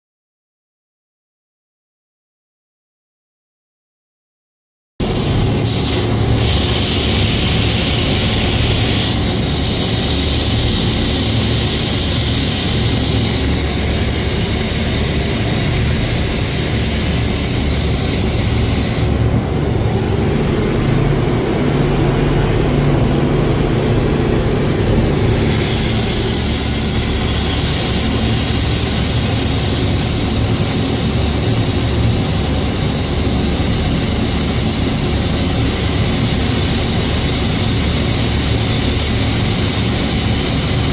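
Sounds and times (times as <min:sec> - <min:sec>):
machinery hiss: 0:05.0 - 0:19.6, 0:24.8 - 0:40.9
machinery low hum: 0:05.0 - 0:32.7.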